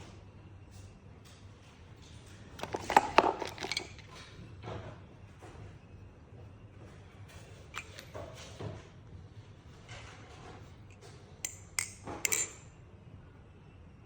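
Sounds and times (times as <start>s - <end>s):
butterfly knife handles clacking: 11.4s - 12.6s.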